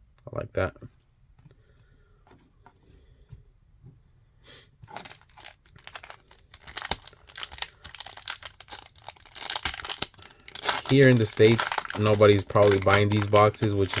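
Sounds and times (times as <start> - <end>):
wrapper tearing and crinkling: 4.9 - 14.0.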